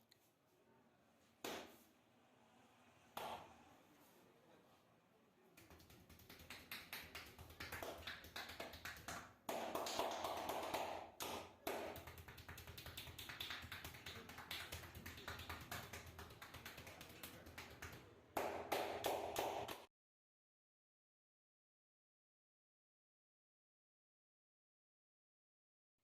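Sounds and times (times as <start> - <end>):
rapid hand tapping massage: 5.6 - 19.9.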